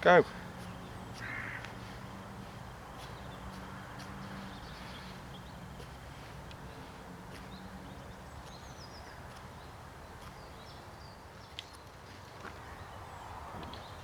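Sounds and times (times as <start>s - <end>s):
low wind rumble: 0.0s - 11.5s
bird chirps: 0.2s - 5.9s, 7.4s - 11.8s.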